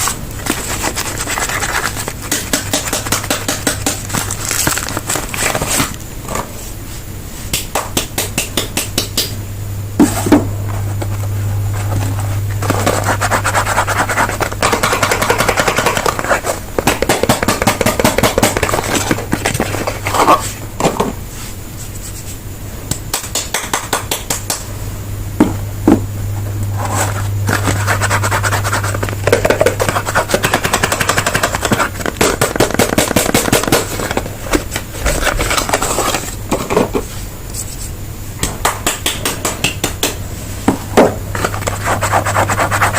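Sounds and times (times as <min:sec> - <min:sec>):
low steady hum: 0:00.0 - 0:42.9
dry soap crackling by hand: 0:00.1 - 0:06.1.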